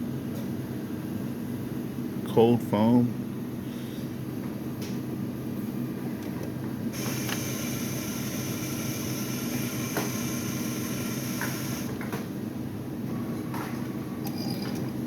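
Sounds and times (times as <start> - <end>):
low machine hum: 0.0 - 15.0
coffee machine dispensing hiss: 6.9 - 12.0.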